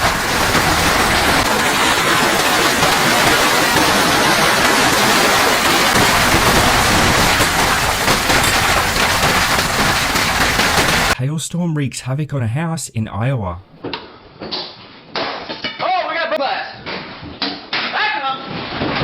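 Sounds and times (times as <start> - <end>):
heavy rain pouring: 0.0 - 11.2.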